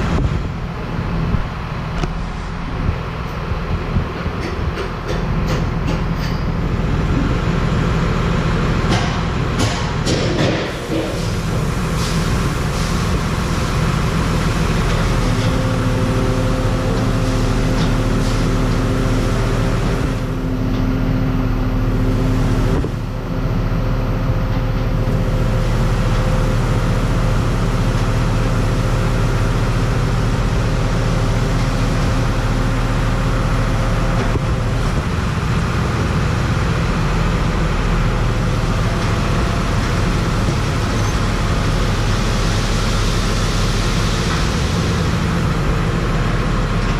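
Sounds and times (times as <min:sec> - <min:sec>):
diesel engine running under load: 0:00.0 - 0:46.9.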